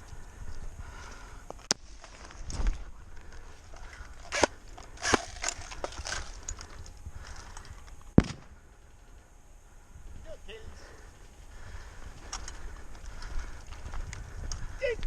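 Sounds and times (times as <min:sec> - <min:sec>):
rustling: 0:01.7 - 0:07.3
footsteps: 0:04.2 - 0:06.6.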